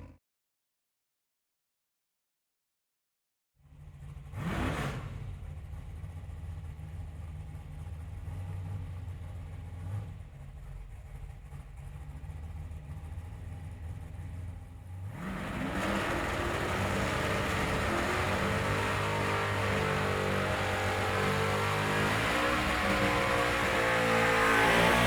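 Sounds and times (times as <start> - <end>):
car engine revving: 3.8 - 6.8, 11.0 - 25.0.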